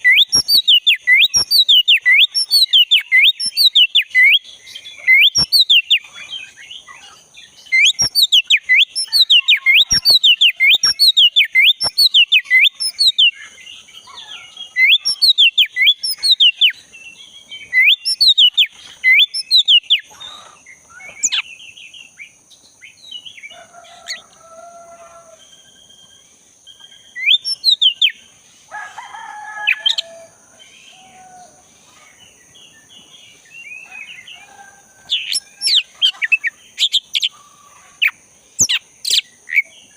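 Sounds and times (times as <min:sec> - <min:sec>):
bird singing whistled notes: 0:00.0 - 0:24.2, 0:25.5 - 0:28.3, 0:38.6 - 0:39.7
lower bird calls: 0:00.0 - 0:28.3, 0:33.0 - 0:39.7.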